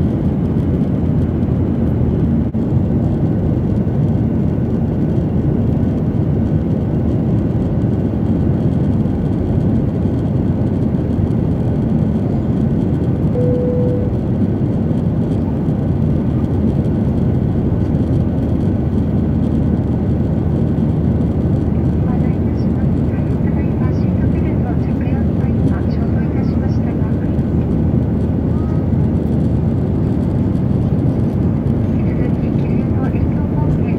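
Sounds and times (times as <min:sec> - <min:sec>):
jet cabin engine rumble: 0:00.0 - 0:33.9
brief steady tone: 0:13.3 - 0:14.3.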